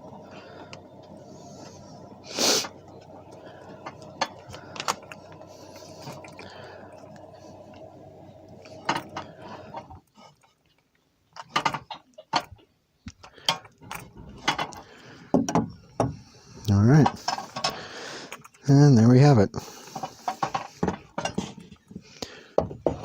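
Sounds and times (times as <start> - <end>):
steady hum: 0.0 - 10.1
hand tools clanking on metal fittings: 3.8 - 6.6, 8.7 - 10.3, 13.2 - 16.2, 17.0 - 18.6, 19.8 - 21.8.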